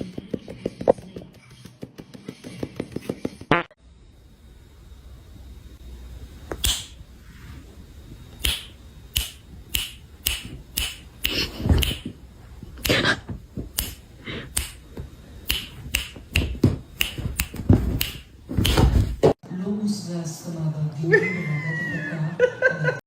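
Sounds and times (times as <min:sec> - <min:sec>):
sharp snapping clicks: 0:06.5 - 0:07.0, 0:08.4 - 0:12.1, 0:13.8 - 0:14.9, 0:15.5 - 0:19.0.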